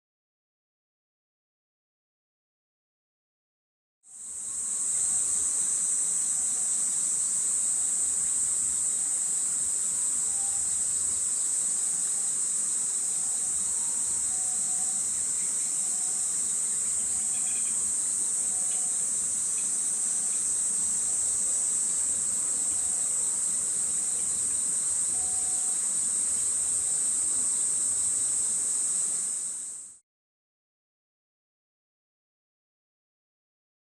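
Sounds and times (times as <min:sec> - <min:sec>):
high-pitched insect chorus: 0:04.1 - 0:30.0.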